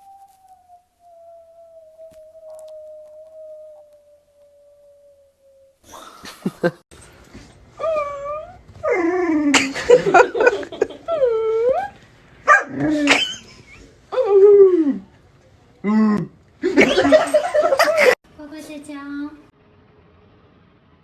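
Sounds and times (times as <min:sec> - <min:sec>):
dog whimpering and yipping: 0:07.8 - 0:09.4, 0:11.1 - 0:13.4.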